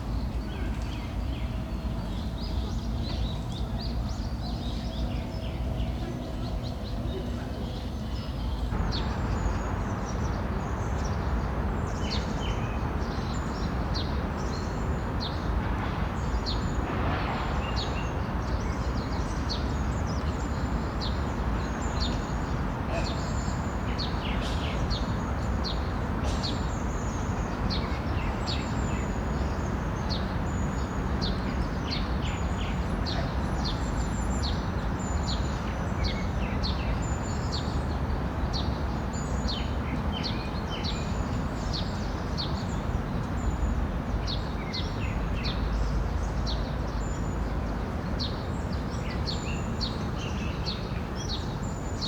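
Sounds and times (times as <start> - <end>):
small songbirds chirping: 17.4 - 52.0.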